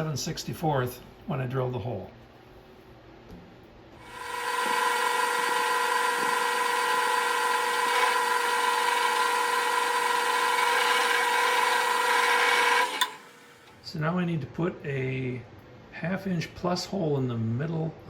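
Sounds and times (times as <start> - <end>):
electric drill whining: 4.0 - 13.7.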